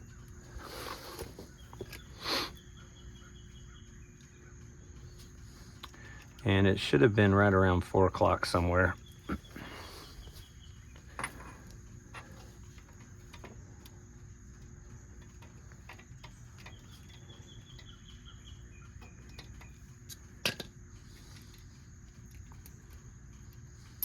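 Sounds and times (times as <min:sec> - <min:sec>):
faint background hum: 0:00.0 - 0:24.0
clicks of metal parts: 0:19.3 - 0:20.7.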